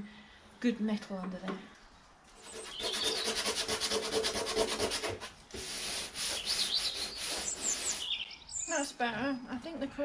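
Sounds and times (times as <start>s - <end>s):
sandpaper scrubbing on metal: 2.4s - 8.2s.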